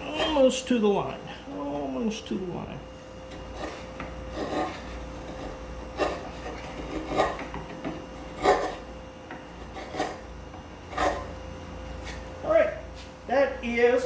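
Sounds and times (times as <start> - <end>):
chisel scraping wood: 3.3 - 10.3, 10.9 - 11.4.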